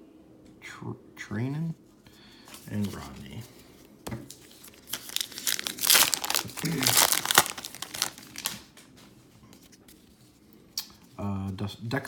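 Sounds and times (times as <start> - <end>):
card pack wrapper crinkling and tearing: 4.3 - 8.7.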